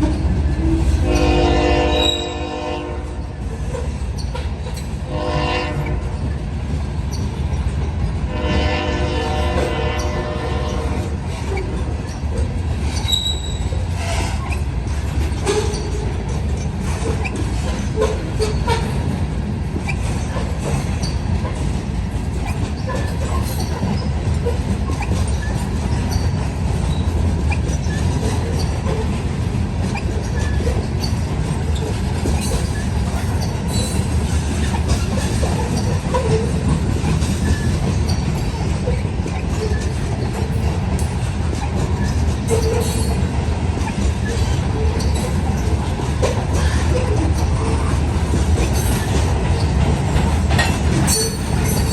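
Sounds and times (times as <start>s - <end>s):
freight train rumbling on rails: 0.0s - 51.9s
wheel squeaks and clicks: 7.1s - 7.6s, 11.5s - 14.7s, 15.4s - 19.0s, 19.8s - 21.6s, 22.4s - 29.2s, 29.8s - 43.2s, 43.8s - 51.9s.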